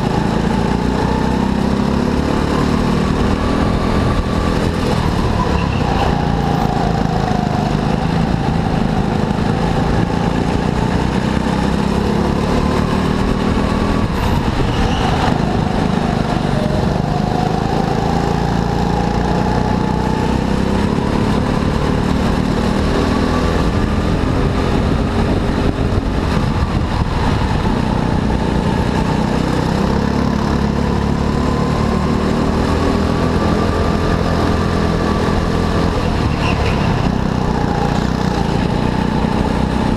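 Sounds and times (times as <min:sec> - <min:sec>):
go-kart engines racing: 0:00.0 - 0:39.9.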